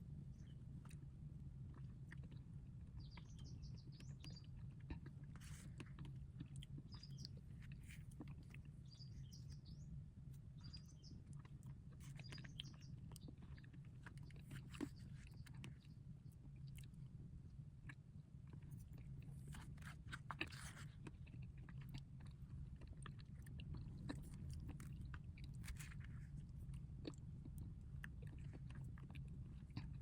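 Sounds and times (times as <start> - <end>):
steady low hum: 0.0 - 30.0
small bird chirps: 2.2 - 16.8.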